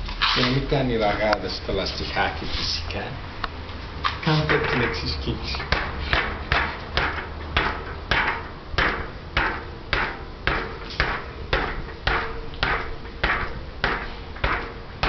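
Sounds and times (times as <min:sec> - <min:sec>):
knocks on bicycle tyre: 0:05.6 - 0:15.0.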